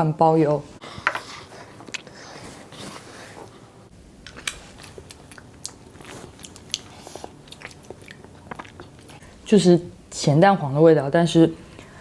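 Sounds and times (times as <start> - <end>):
person chewing food: 4.3 - 9.3.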